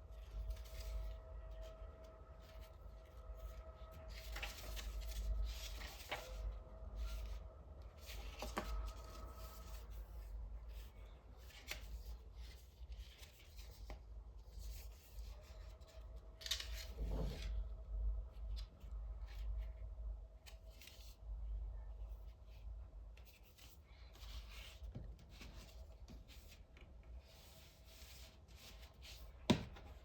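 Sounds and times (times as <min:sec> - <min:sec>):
cardboard and plastic rustling: 0:03.4 - 0:07.3.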